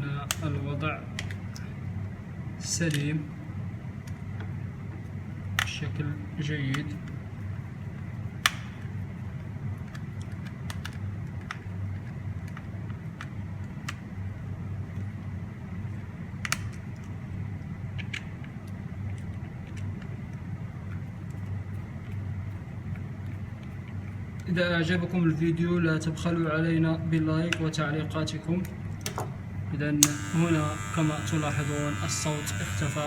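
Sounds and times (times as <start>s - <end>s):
hair clipper humming: 30.0s - 33.0s.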